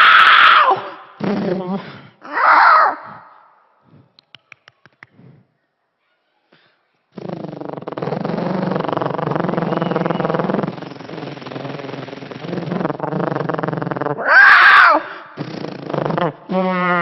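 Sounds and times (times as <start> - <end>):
high vocal shriek: 0.0 - 1.1, 14.2 - 15.2
person imitating monster roar: 7.6 - 17.0.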